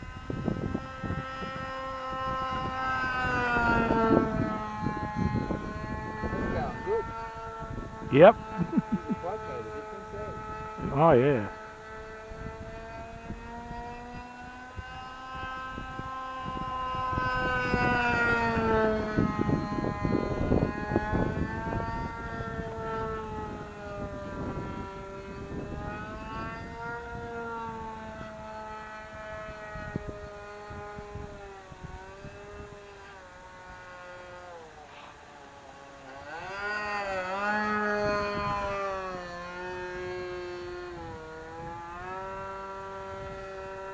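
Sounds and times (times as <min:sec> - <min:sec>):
model plane engine buzzing: 0:00.0 - 0:43.9.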